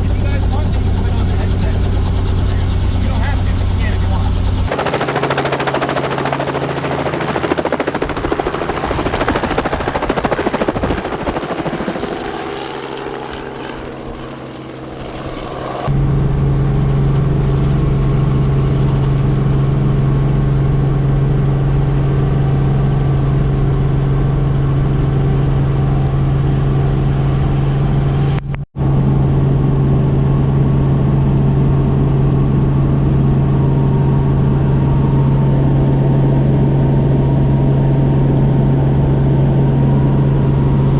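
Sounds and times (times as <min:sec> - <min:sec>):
helicopter rotor chop: 0:00.0 - 0:28.3
helicopter drone with low hum: 0:00.0 - 0:40.9.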